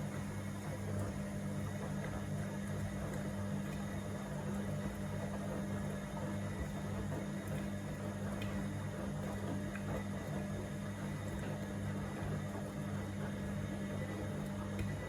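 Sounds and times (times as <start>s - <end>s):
washing machine motor hum: 0.0s - 15.0s.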